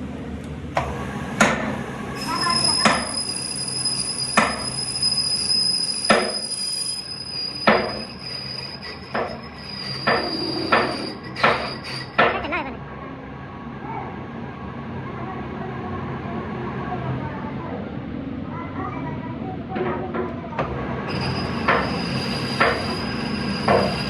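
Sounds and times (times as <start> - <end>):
hammer striking metal: 21.6 - 22.0, 23.7 - 24.0.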